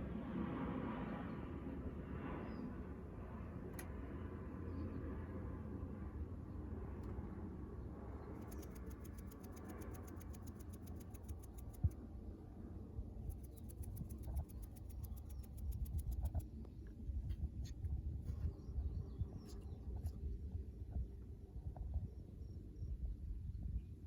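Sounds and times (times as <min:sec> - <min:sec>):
faint clicks: 0:08.4 - 0:12.0, 0:13.3 - 0:16.5
fast high ticking: 0:08.4 - 0:12.0, 0:13.3 - 0:16.4
small chirps: 0:08.4 - 0:12.0, 0:13.2 - 0:16.5.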